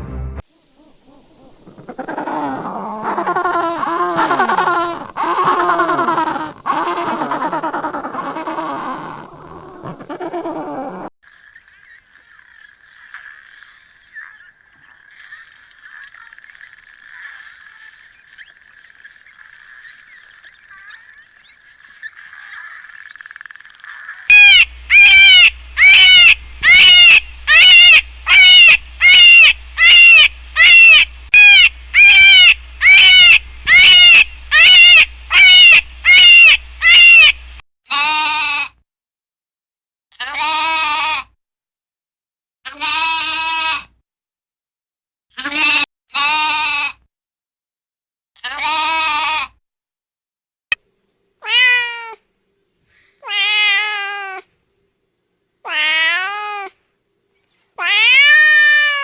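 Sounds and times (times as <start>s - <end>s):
low hum: 11.3s - 37.6s
cat meowing: 51.4s - 52.2s, 53.2s - 54.5s, 55.7s - 56.8s, 57.8s - 59.0s.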